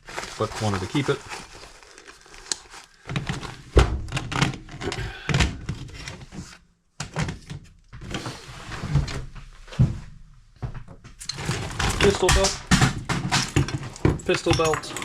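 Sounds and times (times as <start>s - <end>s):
nylon rustling: 0.0s - 3.7s
gear thunks and knocks: 3.2s - 5.8s, 10.8s - 15.0s.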